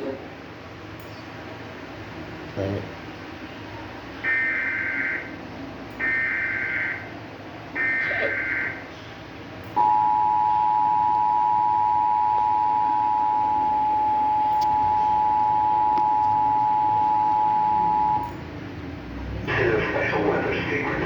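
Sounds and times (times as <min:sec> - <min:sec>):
two-tone alert signal: 0:09.8 - 0:18.4.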